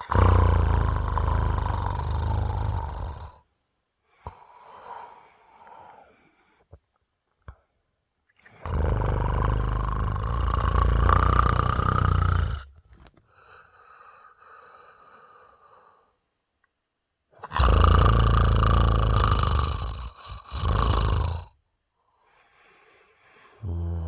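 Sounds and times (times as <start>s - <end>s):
man snoring: 0.0s - 3.5s, 8.5s - 12.8s, 17.4s - 21.6s, 23.2s - 24.0s
breathy out-breath: 13.2s - 16.2s.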